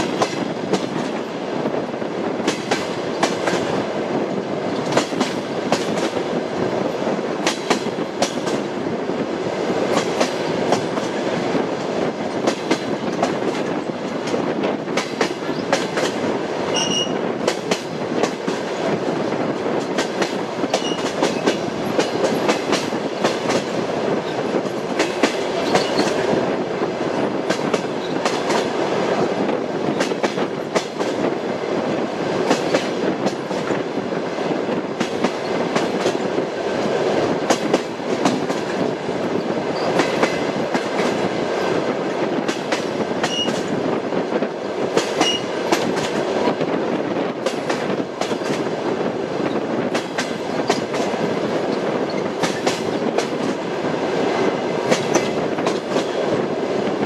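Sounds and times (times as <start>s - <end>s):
train wheels clicking over rail joints: 0.0s - 8.8s, 9.5s - 57.0s
train rumble: 0.0s - 57.0s
short high squeak: 16.8s - 17.2s.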